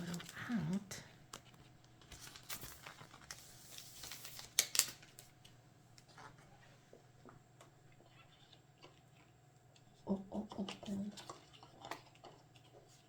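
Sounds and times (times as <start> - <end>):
photo sliding with papery rustle: 0.0 - 5.5.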